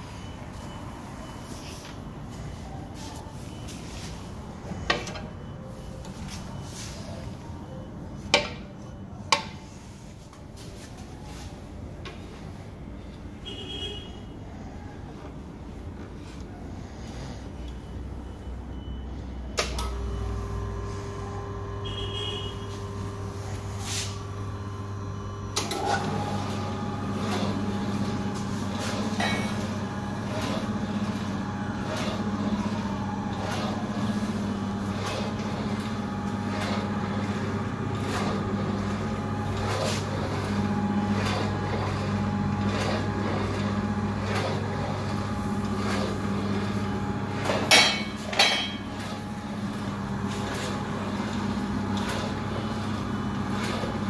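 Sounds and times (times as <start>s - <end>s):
slicer motor hum: 19.9s - 54.0s.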